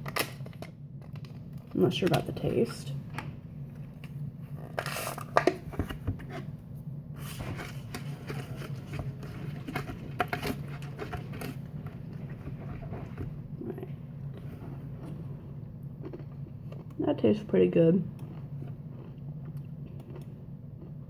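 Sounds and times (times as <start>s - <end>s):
steady low hum: 0.0s - 21.0s
crunchy chewing: 8.6s - 17.0s, 18.1s - 21.0s.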